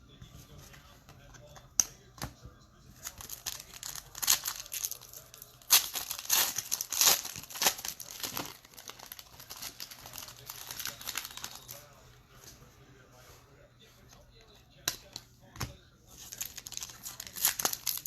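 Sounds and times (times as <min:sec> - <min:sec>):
wrapper tearing and crinkling: 0:03.0 - 0:11.8, 0:16.2 - 0:18.0.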